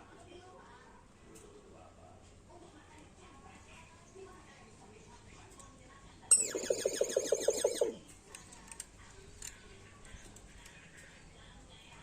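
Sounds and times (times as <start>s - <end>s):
myna whistling call: 6.3s - 8.0s.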